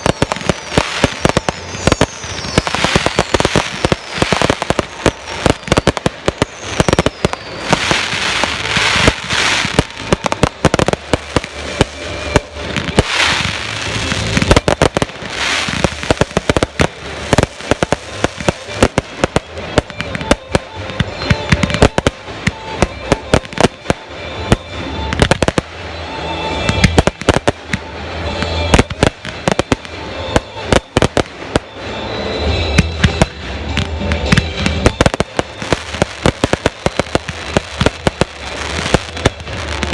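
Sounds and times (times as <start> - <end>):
fireworks bangs and crackling bursts: 0.0 - 39.9.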